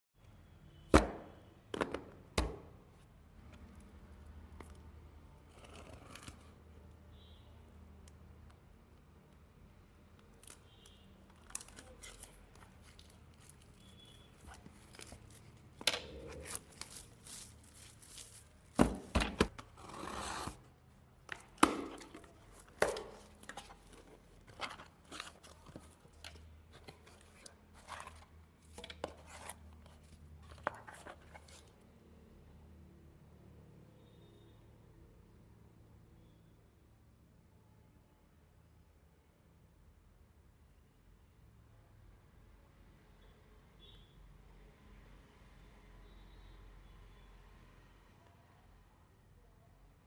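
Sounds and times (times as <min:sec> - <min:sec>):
plastic and paper tearing: 0:11.4 - 0:20.7.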